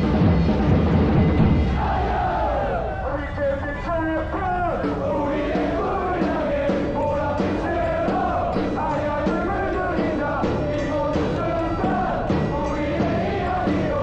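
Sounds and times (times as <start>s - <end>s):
steady drumbeat: 0.0s - 2.9s, 4.3s - 14.0s
football supporters chanting: 1.5s - 3.2s, 4.5s - 14.0s.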